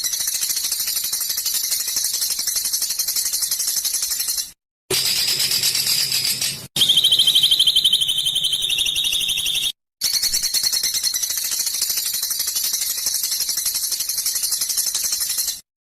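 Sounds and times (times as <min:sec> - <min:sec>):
harsh pulsed bird rasping: 0:04.3 - 0:09.8
high-pitched bird trill: 0:04.3 - 0:11.4.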